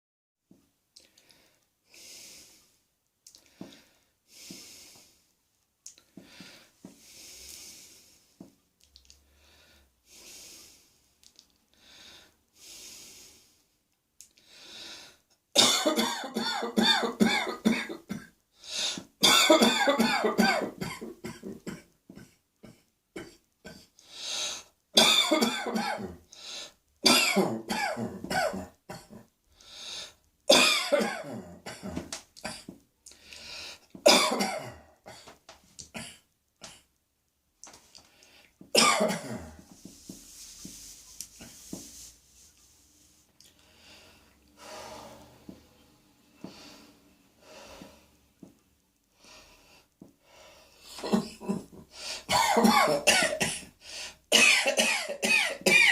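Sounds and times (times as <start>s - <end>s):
soft breaths: 1.0s - 15.4s, 32.7s - 34.0s, 39.4s - 51.0s
person coughing: 15.6s - 18.3s, 19.2s - 23.9s, 25.0s - 26.2s, 27.0s - 29.2s, 30.5s - 32.7s, 34.1s - 35.3s, 38.8s - 39.6s, 50.9s - 55.9s.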